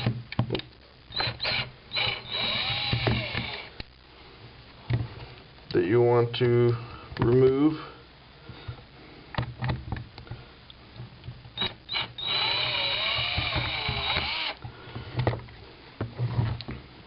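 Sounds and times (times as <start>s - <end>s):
power screwdriver motor whirring: 1.1s - 3.7s, 11.6s - 14.6s.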